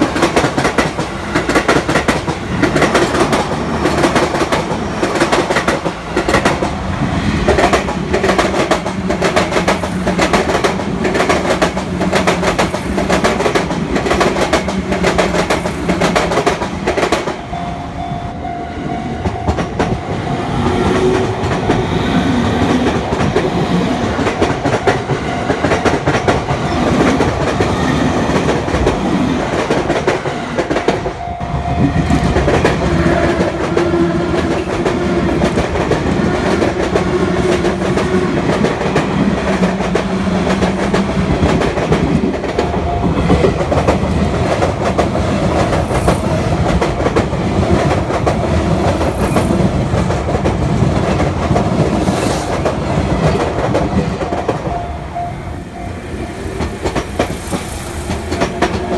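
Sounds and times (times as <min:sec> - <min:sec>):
train wheels clattering over rail joints: 0:31.9 - 0:54.8, 0:56.6 - 0:58.9.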